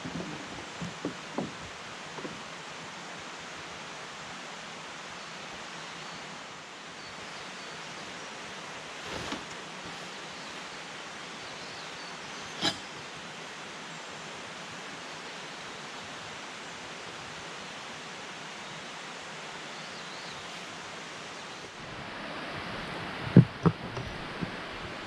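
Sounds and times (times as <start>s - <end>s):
mountain stream rushing: 0.0s - 25.0s
dull knock: 0.1s - 2.4s.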